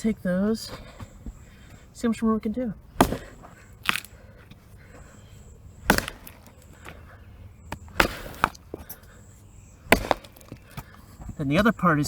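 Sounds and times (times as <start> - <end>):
axe chopping into wood: 3.0 - 4.2, 5.8 - 7.1, 7.7 - 9.0, 9.9 - 10.9
wood splintering crackle: 3.0 - 5.1, 5.7 - 7.2, 7.9 - 9.1, 9.8 - 10.9.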